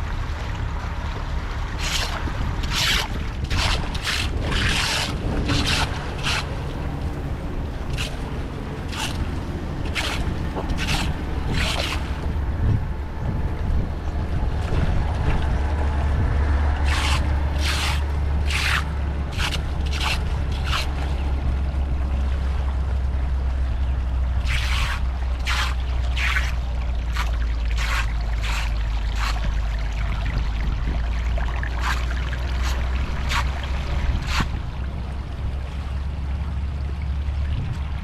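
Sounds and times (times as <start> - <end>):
steady low rumble: 0.0 - 38.0
hand tool scraping debris: 1.8 - 6.6, 7.9 - 8.2, 8.9 - 9.3, 9.9 - 12.1, 16.8 - 21.0, 24.5 - 29.5, 31.8 - 33.6, 34.2 - 34.6.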